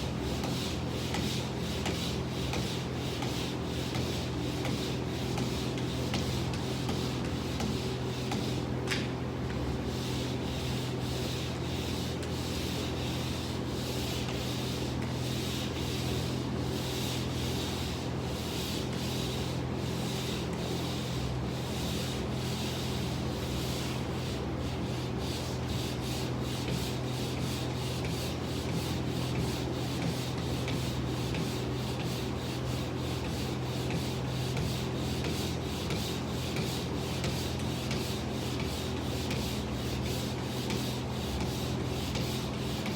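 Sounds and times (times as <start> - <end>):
sandpaper rubbing back and forth: 25.0 - 42.9.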